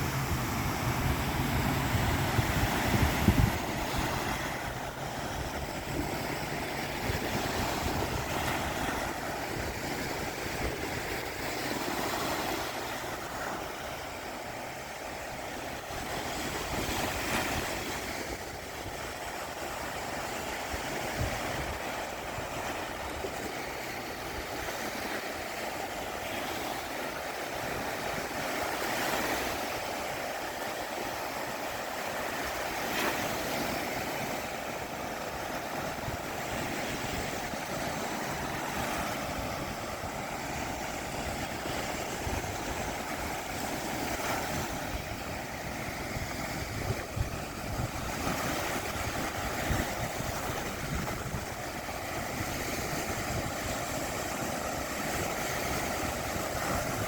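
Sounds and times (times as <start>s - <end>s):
wind buffeting microphone: 0.0s - 26.0s, 26.8s - 57.0s
surf washing on shore: 0.0s - 57.0s.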